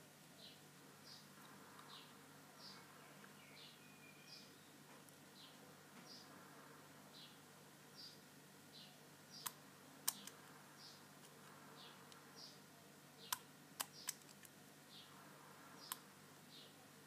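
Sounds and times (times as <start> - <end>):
faint high chirp: 0.4 - 6.3.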